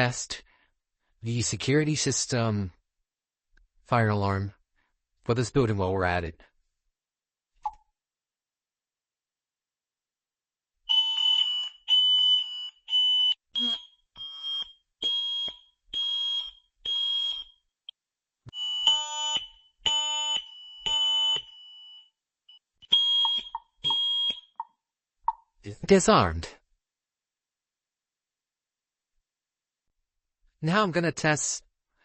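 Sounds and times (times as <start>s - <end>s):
fire alarm beeps: 10.9s - 17.6s, 18.5s - 24.8s.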